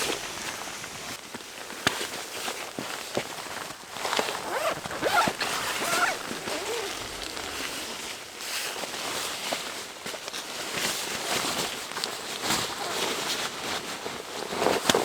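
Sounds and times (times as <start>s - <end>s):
footsteps crunching in snow: 3.9s - 8.2s.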